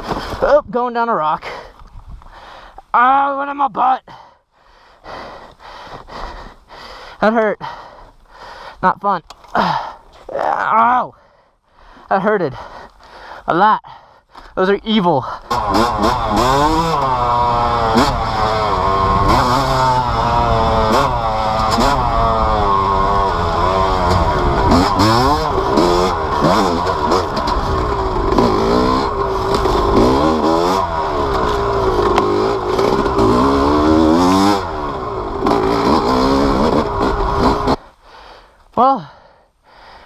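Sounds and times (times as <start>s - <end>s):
dirt bike engine revving: 15.4s - 37.9s.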